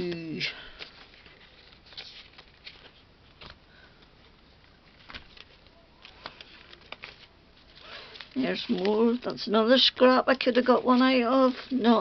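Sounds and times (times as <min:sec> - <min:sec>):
card tapping and rustling: 0:04.9 - 0:09.4.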